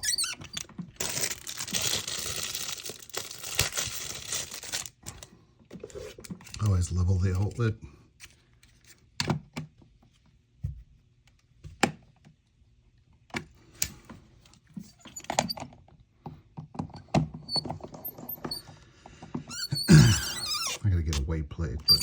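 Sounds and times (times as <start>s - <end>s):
faint high squeaks: 0.0s - 0.6s, 19.5s - 20.9s.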